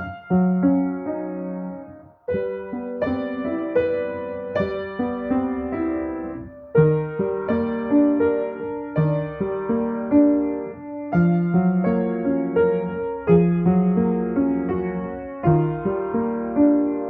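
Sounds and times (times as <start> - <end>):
slow gentle piano melody: 0.0 - 17.0.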